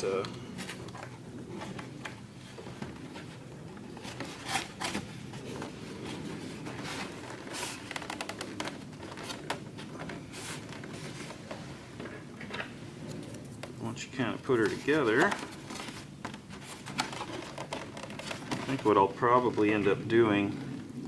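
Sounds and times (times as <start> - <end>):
foam parts rubbing and scraping: 0.1 - 21.0.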